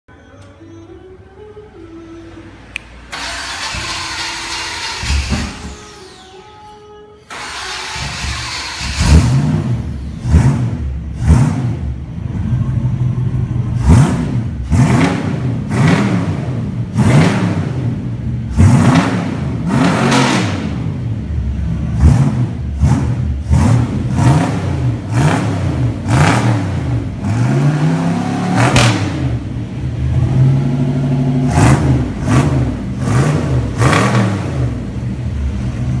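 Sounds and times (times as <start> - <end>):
car engine revving: 2.7 - 6.2, 7.3 - 36.0
car engine idling: 7.3 - 19.7, 20.6 - 36.0.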